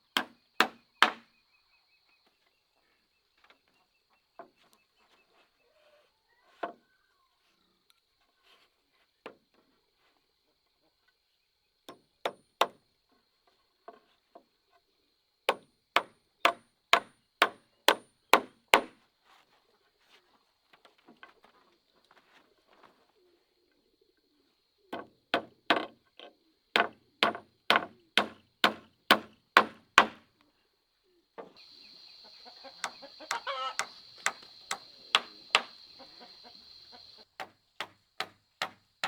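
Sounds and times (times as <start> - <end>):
tool striking wood: 0.2 - 1.2, 26.8 - 30.2, 32.8 - 35.8, 37.4 - 38.8.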